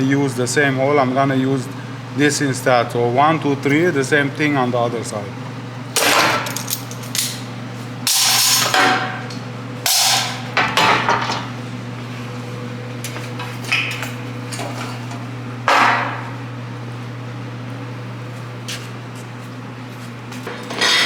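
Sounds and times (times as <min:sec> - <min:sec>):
low electrical hum: 0:00.0 - 0:21.0
metal parts knocking and clanking: 0:06.0 - 0:07.4.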